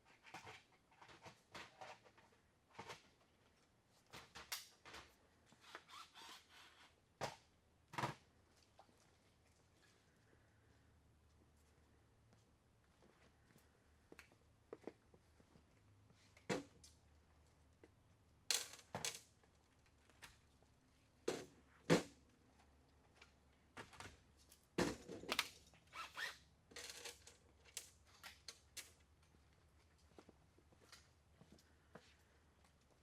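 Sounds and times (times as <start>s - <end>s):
tools and parts handled: 26.7s - 29.0s.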